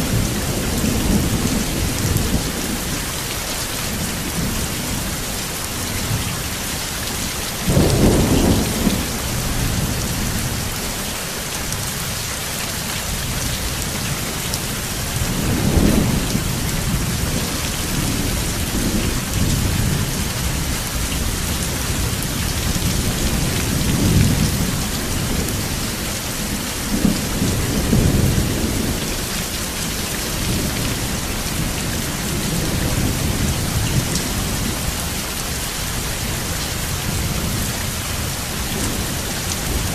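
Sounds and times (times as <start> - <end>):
rain falling: 0.0 - 39.9
rolling thunder: 7.6 - 10.9, 14.8 - 35.2.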